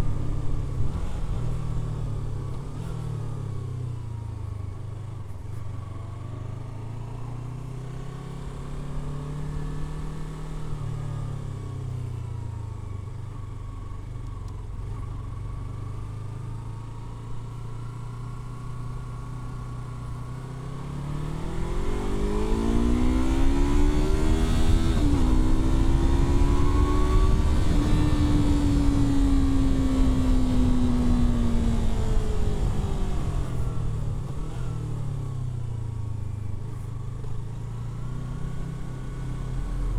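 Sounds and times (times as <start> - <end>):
motorcycle engine revving: 17.4 - 39.9.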